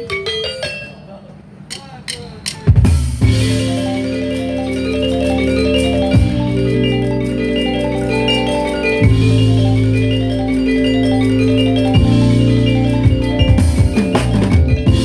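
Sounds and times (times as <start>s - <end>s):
live band instrumental music: 0.0s - 15.0s
mallet percussion melody: 0.0s - 15.0s
low bass notes: 3.2s - 15.0s.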